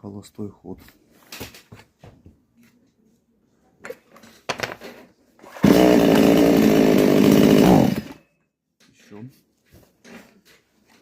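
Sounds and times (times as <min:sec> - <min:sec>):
chainsaw engine revving: 0:05.5 - 0:08.2.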